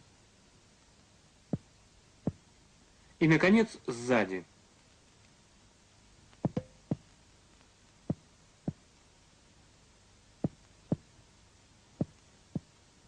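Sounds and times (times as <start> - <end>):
dull finger taps on chest: 6.4 - 7.1, 8.1 - 8.8, 10.4 - 11.1, 12.0 - 12.7.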